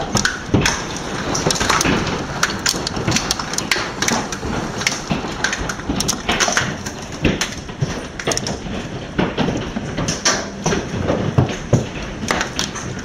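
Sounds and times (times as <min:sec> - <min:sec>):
hail falling: 0:00.0 - 0:13.0
hailstones knocking on house: 0:00.0 - 0:13.0.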